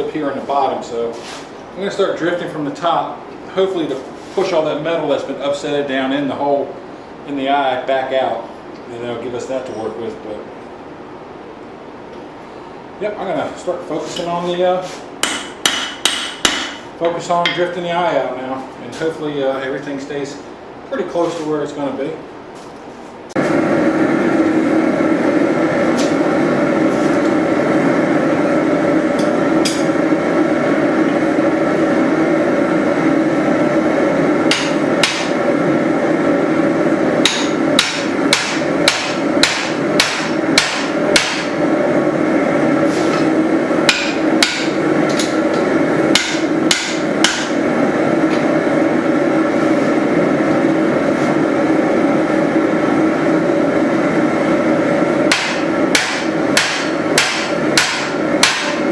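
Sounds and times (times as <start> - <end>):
steady background noise: 0.0 - 58.9
hammer striking steel: 15.2 - 16.9, 29.2 - 30.0, 34.5 - 35.4, 37.2 - 41.5, 43.9 - 47.6, 55.3 - 58.9.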